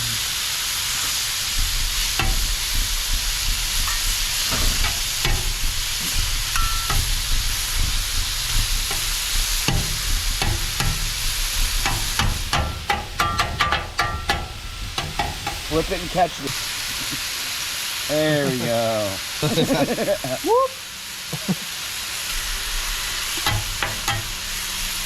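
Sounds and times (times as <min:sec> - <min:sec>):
chicken sizzling on griddle: 0:00.0 - 0:25.0
ringing metal clinks: 0:06.6 - 0:07.0.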